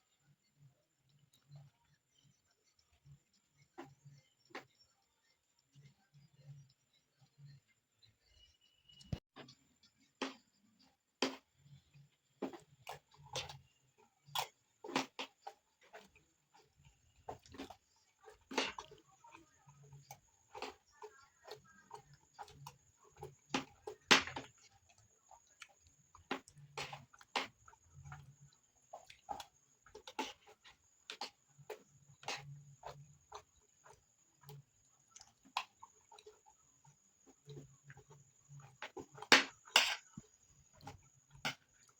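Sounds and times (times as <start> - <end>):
person chewing food: 11.2 - 41.9.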